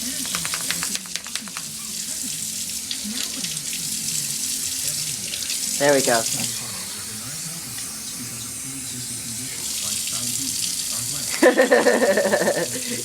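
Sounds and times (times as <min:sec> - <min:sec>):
tap water running into sink: 0:00.0 - 0:06.6.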